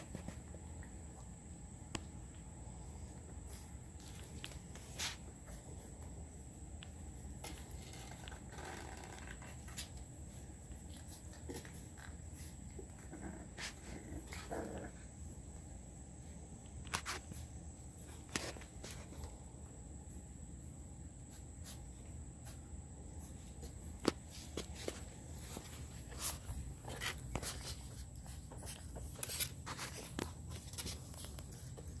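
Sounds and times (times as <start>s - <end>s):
puppies scratching and rustling: 0.0s - 15.7s, 16.6s - 32.0s
light clicks and shuffles: 21.2s - 32.0s.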